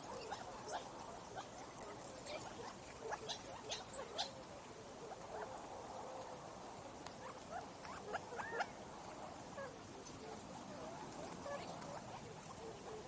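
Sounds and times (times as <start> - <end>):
quail chirps and clucks: 0.0 - 5.5, 7.0 - 8.8
faint steady hiss: 0.0 - 13.0.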